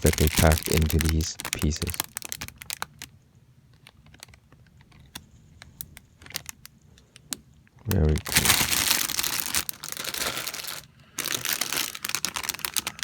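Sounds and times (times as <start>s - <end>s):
plastic parts clicking together: 3.7s - 8.4s.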